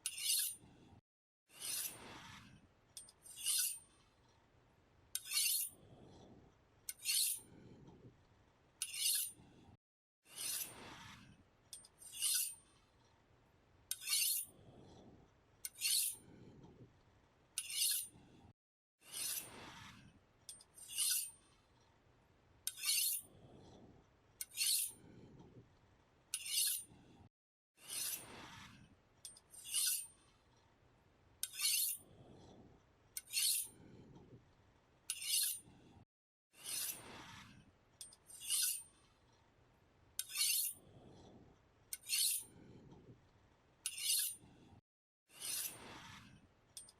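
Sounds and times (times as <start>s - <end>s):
knife sharpening strokes: 0.0s - 0.6s, 1.6s - 2.0s, 3.2s - 3.8s, 5.2s - 5.7s, 6.9s - 7.4s, 8.8s - 9.4s, 10.3s - 10.8s, 12.0s - 12.6s, 13.9s - 14.5s, 15.7s - 16.2s, 17.6s - 18.1s, 19.1s - 19.5s, 20.8s - 21.4s, 22.7s - 23.2s, 24.4s - 25.0s, 26.4s - 26.9s, 27.8s - 28.3s, 29.6s - 30.1s, 31.4s - 32.0s, 33.2s - 33.7s, 35.1s - 35.6s, 36.6s - 37.1s, 38.3s - 38.9s, 40.2s - 40.8s, 42.0s - 42.5s, 43.9s - 44.4s, 45.3s - 45.8s.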